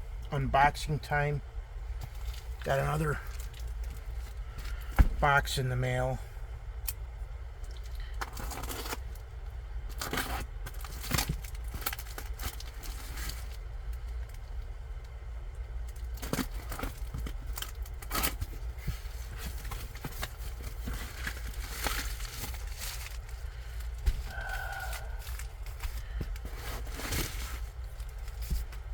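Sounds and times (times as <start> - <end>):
steady low hum: 0.0 - 28.9
cardboard rustling and tearing: 8.3 - 9.2, 9.9 - 13.7, 16.0 - 28.9.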